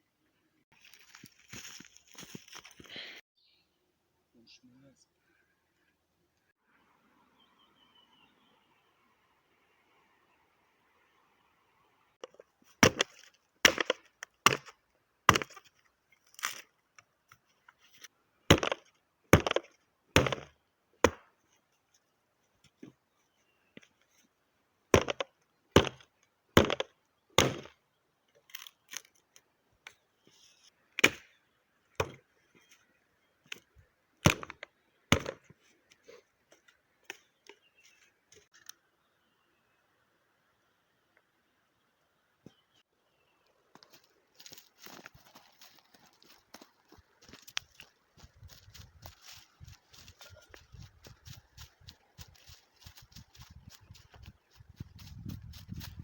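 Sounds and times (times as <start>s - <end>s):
axe chopping wood: 12.2s - 15.6s, 18.5s - 21.3s, 24.9s - 27.8s, 31.0s - 31.4s, 32.0s - 32.2s, 34.2s - 35.5s.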